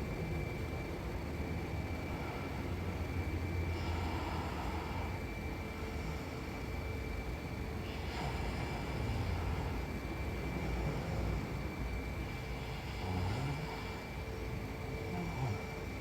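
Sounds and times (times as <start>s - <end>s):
faint steady whine: 0.0s - 16.0s
steady hiss: 0.0s - 16.0s
woman snoring: 12.5s - 14.1s, 15.0s - 16.0s.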